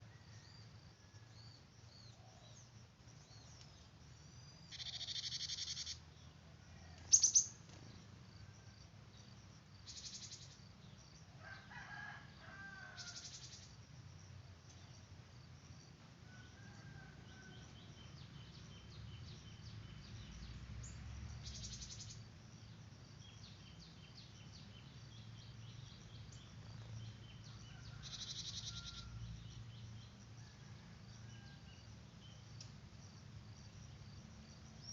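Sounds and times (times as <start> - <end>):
small birds chirping: 1.4 - 8.2, 9.2 - 11.3, 17.8 - 30.2
buzzy bird trills: 4.7 - 6.0, 7.1 - 7.6.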